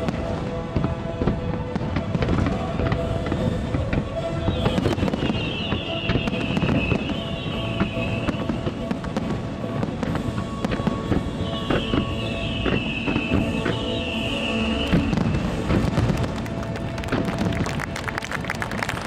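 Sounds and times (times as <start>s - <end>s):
firework whistle falling in pitch: 0.0s - 9.0s, 10.3s - 16.4s
fireworks crackling and popping: 0.0s - 19.0s
music: 0.0s - 19.0s.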